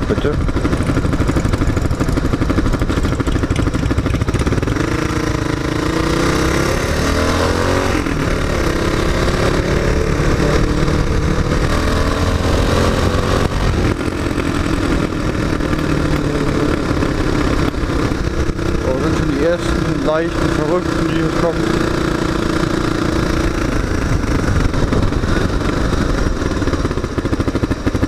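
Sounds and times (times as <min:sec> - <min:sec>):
motorcycle engine running: 0:00.0 - 0:28.0
wind noise: 0:06.0 - 0:20.0, 0:22.7 - 0:27.0.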